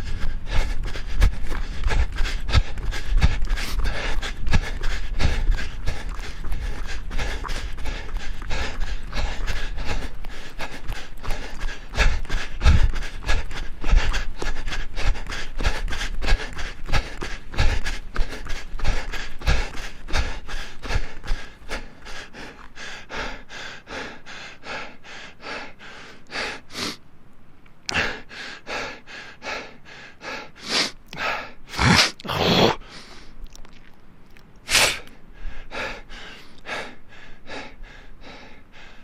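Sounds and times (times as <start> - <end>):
person gasping: 0.0 - 23.3
person panting: 0.0 - 27.0, 27.9 - 33.4, 34.7 - 39.0.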